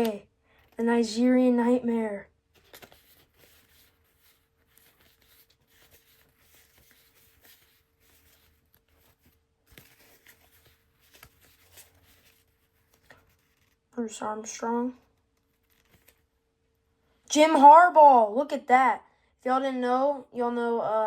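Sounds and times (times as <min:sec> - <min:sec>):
trading cards rustling and clicking: 0:02.5 - 0:13.9, 0:15.1 - 0:16.3.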